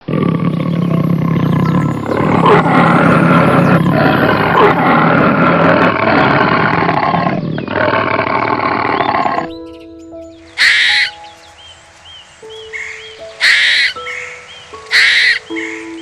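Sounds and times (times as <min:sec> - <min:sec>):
low-pitched animal calling: 0:00.0 - 0:09.5, 0:10.6 - 0:11.2, 0:12.8 - 0:14.2, 0:14.9 - 0:15.8.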